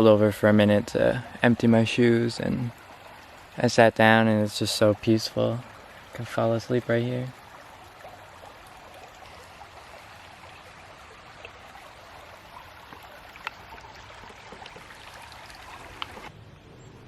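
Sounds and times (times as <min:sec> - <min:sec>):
creek trickling over rocks: 0:00.0 - 0:16.3
faint ticks: 0:12.8 - 0:13.8.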